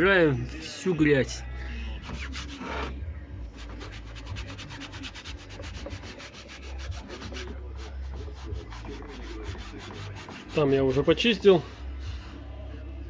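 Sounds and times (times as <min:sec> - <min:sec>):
rapid scrubbing: 0:03.6 - 0:12.3.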